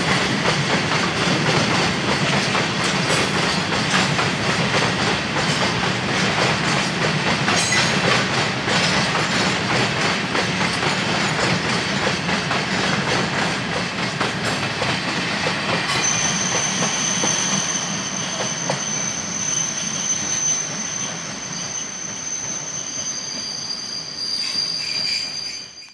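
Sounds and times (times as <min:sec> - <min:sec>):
freight train wagons rolling: 0:00.0 - 0:25.9
high wheel squeal: 0:15.9 - 0:25.9.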